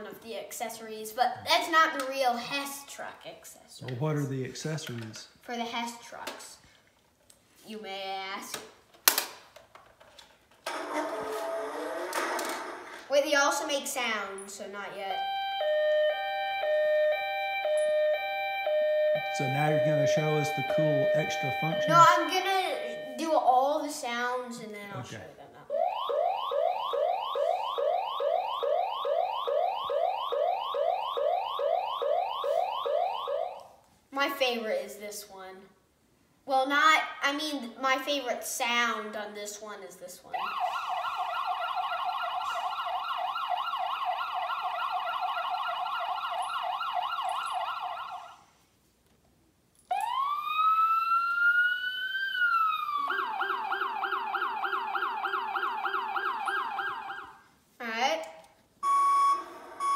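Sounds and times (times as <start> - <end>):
toy ambulance siren yelping: 15.1 - 23.3, 25.7 - 33.7, 40.4 - 48.4, 49.9 - 57.4, 58.8 - 59.9.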